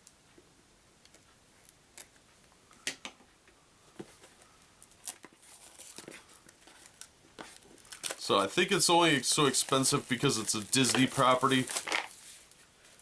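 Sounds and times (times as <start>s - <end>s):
cardboard rustling: 4.0s - 13.0s.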